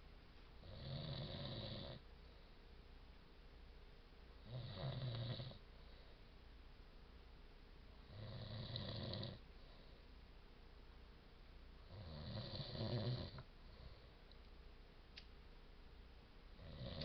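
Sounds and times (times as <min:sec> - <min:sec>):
man snoring: 0:00.6 - 0:02.0, 0:04.5 - 0:05.6, 0:08.1 - 0:09.4, 0:11.9 - 0:13.4, 0:16.6 - 0:17.0.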